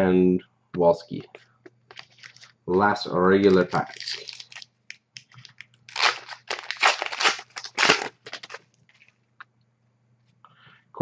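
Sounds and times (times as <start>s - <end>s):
card pack wrapper tearing and crinkling: 1.9s - 2.6s, 3.4s - 8.7s.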